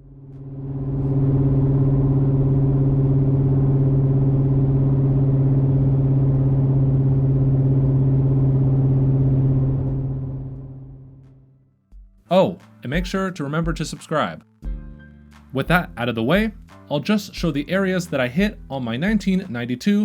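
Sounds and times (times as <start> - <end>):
car engine exhaust note: 0.0 - 11.6.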